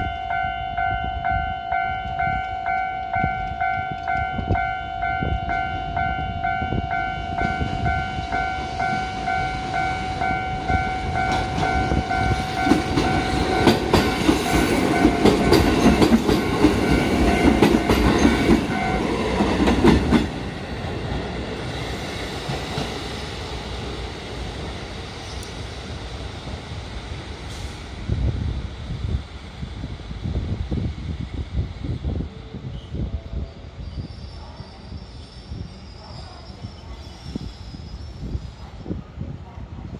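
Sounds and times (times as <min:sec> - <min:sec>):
level-crossing bell ringing: 0:00.0 - 0:14.4
train wheels clattering: 0:11.2 - 0:20.4.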